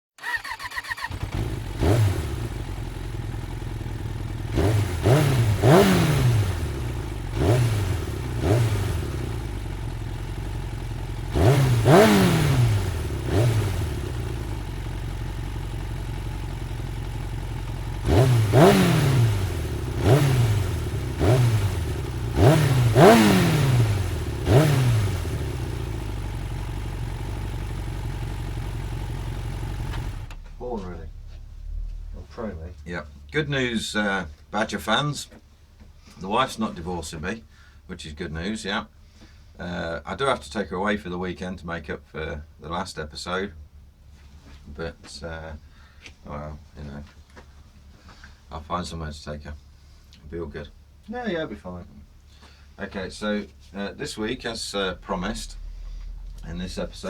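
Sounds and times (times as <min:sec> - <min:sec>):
motorcycle engine revving: 0:00.2 - 0:34.0, 0:52.8 - 0:57.0.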